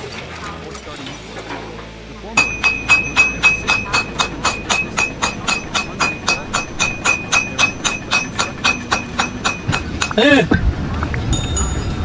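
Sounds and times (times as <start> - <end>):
rapid ringing metallic strikes: 11.4 - 12.0.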